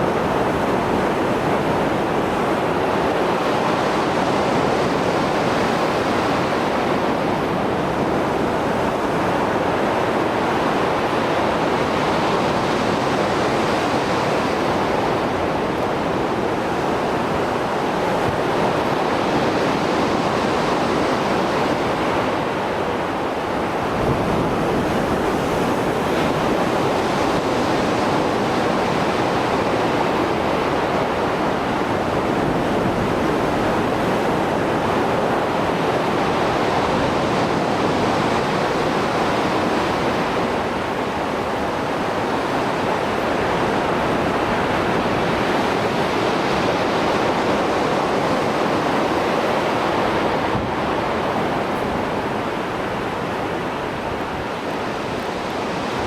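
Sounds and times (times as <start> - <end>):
waves breaking on shore: 0.0 - 56.0.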